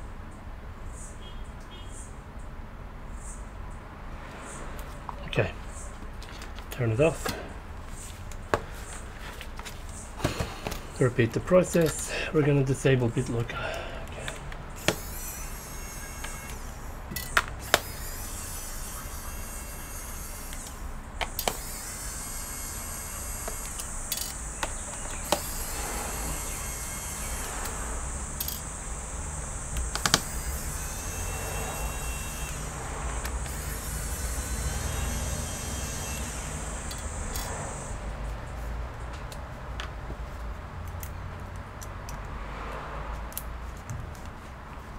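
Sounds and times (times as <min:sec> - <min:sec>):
thin high whine: 0:14.8 - 0:38.1.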